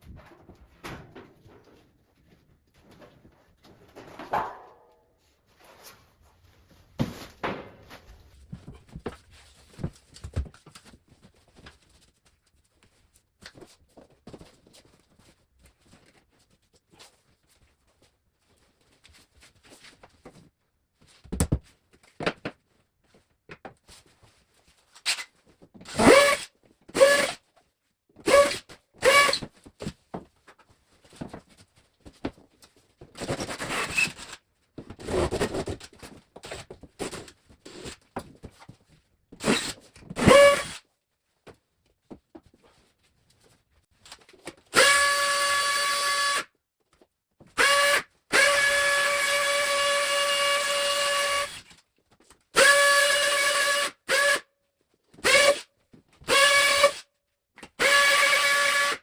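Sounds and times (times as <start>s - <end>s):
cordless drill spinning: 25.9s - 27.4s, 28.3s - 29.4s, 39.4s - 40.8s, 44.7s - 46.4s, 47.6s - 51.6s, 52.6s - 54.4s, 55.2s - 55.6s, 56.3s - 57.0s, 57.8s - 59.0s.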